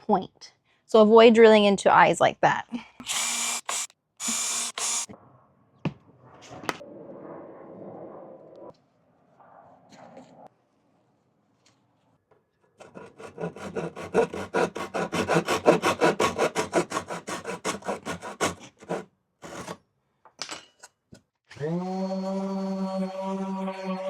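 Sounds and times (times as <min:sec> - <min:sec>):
rasping strokes on wood: 0:12.8 - 0:19.8.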